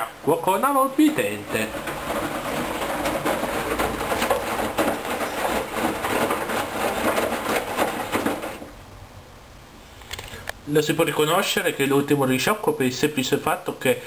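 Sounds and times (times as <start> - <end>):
washing machine drum sloshing: 0.6 - 9.0
drum knocking: 1.1 - 8.7.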